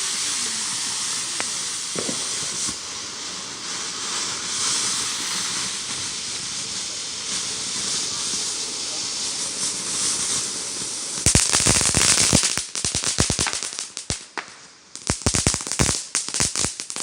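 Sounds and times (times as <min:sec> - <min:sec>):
fireworks hissing sparks: 0:00.0 - 0:17.0
faint pops: 0:01.4 - 0:02.8.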